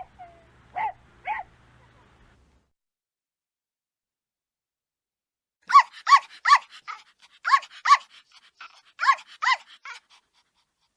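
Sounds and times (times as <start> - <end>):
dog barking: 0.0 - 2.1, 5.7 - 10.0.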